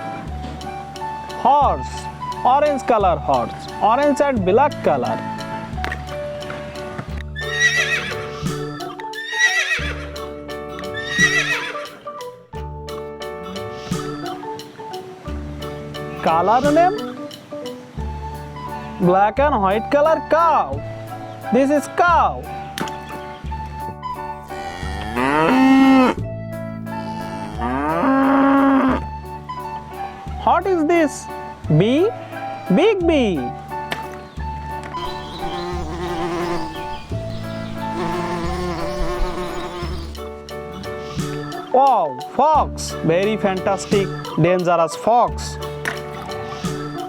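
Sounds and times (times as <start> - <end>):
background music: 0.0 - 47.0
horse whinnying: 7.4 - 12.1, 24.4 - 26.2, 26.9 - 29.2, 35.0 - 41.6
cow mooing: 24.5 - 26.2, 26.9 - 29.1, 35.1 - 37.1, 37.8 - 40.2.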